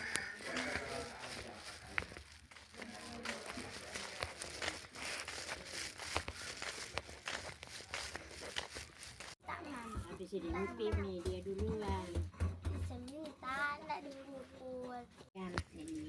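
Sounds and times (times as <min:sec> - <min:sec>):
rustling and crinkling: 0:00.0 - 0:11.0.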